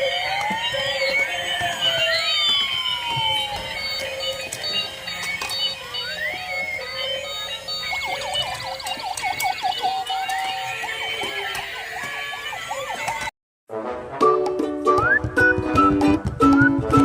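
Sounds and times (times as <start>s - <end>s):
electronic siren warbling and beeping: 0.0s - 13.3s.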